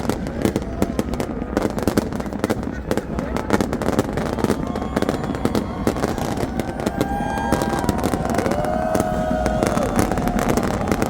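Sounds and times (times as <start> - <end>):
fireworks popping and crackling: 0.0 - 11.0
large crowd noise: 0.0 - 11.0
long whistling tones: 4.2 - 11.0.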